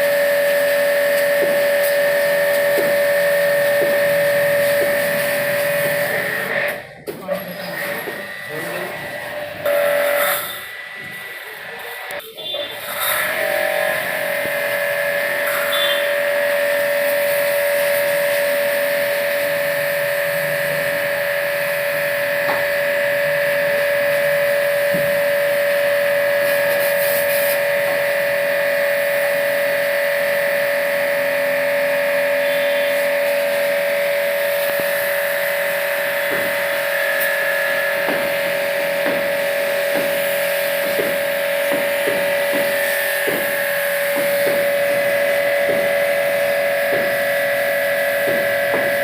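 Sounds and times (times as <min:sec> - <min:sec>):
motor whining: 0:00.0 - 0:12.2.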